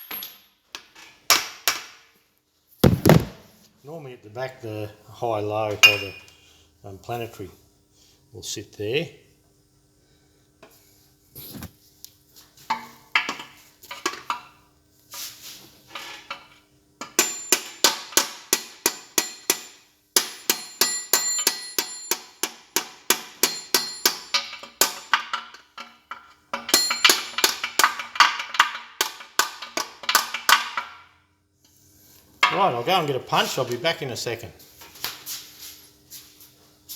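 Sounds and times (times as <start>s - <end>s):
hammer striking metal: 17.2s - 24.5s.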